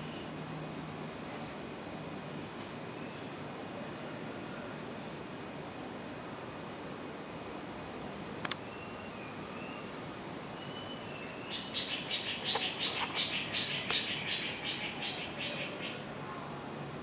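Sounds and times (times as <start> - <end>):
steady fan hiss: 0.0 - 17.0
bird chirping: 8.6 - 16.0.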